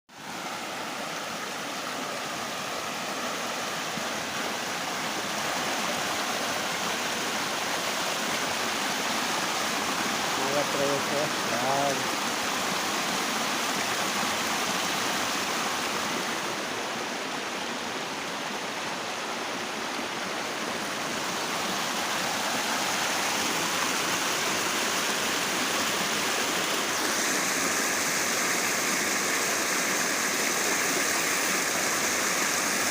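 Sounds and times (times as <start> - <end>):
water rushing and splashing: 0.1 - 32.9.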